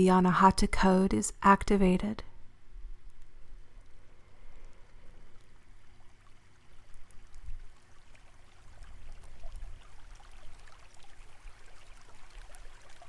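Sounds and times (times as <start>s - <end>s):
trickling water: 2.5s - 13.0s
small ticks: 3.0s - 10.0s.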